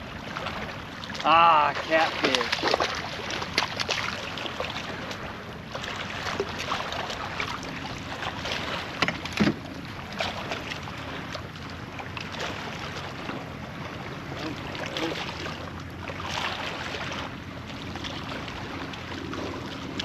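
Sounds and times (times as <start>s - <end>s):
small water splashes: 0.0s - 20.0s
knocks and clicks on kayak: 9.0s - 9.7s.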